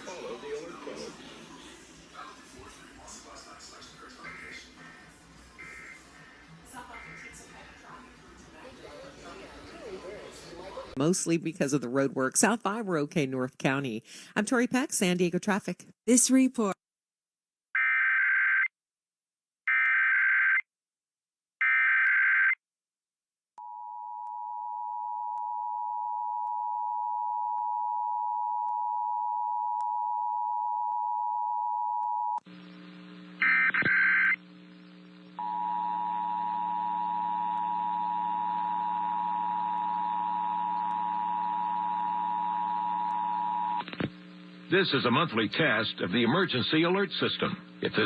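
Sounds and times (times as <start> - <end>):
electrical hum: 32.5 - 48.0.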